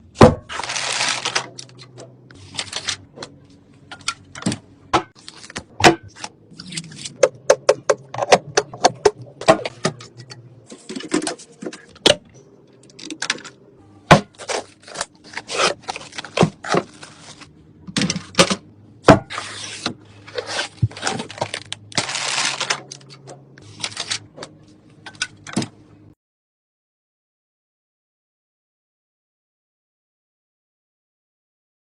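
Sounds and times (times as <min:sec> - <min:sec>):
low hum: 0:01.2 - 0:23.6.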